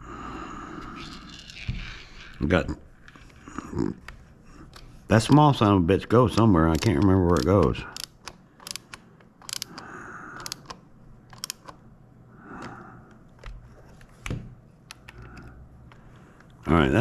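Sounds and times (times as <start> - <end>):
plastic parts clicking and scraping: 6.3 - 9.8, 10.4 - 11.8.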